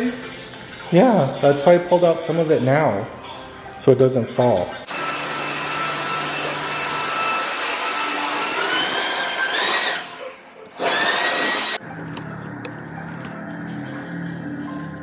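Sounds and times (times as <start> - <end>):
motor appliance rushing and whining: 4.9 - 10.2, 10.8 - 11.8.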